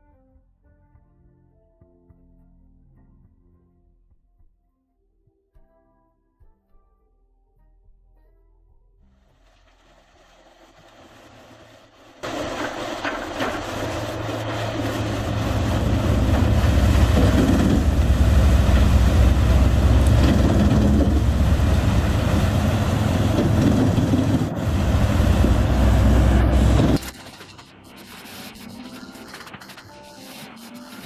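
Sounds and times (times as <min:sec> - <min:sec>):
grinding rasping machinery: 0:12.2 - 0:27.0
deep engine drone: 0:12.2 - 0:27.1.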